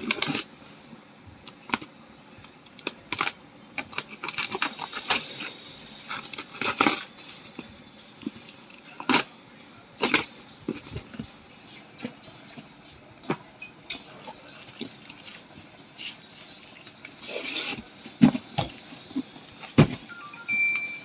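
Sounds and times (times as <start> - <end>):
parts and packaging clicking: 1.4 - 9.3
packaging rustle: 2.5 - 9.3, 14.1 - 20.1.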